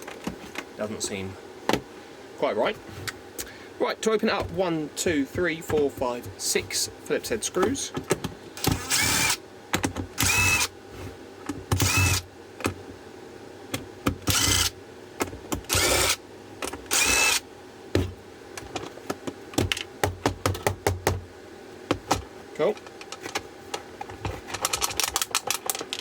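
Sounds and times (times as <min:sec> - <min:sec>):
power screwdriver whirring: 0:08.6 - 0:09.4, 0:10.2 - 0:10.7, 0:11.8 - 0:12.2, 0:14.3 - 0:14.7, 0:15.7 - 0:16.2, 0:16.9 - 0:17.4
screws and plastic case rattling: 0:22.7 - 0:26.0.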